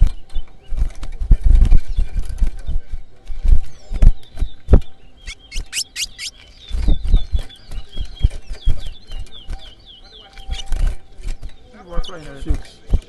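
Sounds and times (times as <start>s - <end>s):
finch singing: 3.6s - 12.8s.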